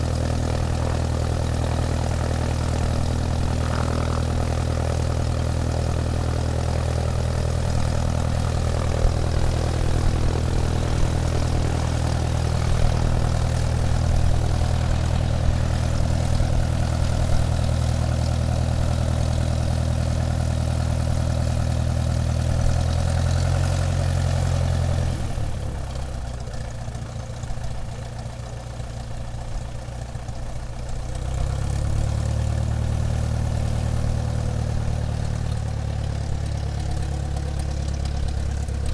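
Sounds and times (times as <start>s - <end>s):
airplane engine droning: 0.0s - 21.7s.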